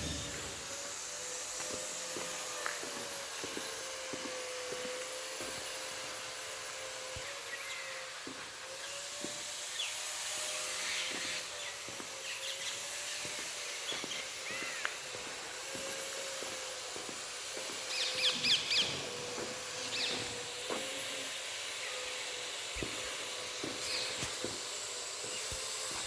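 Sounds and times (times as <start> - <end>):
faint wavering hum: 0.0 - 2.0
steady hiss: 0.0 - 26.0.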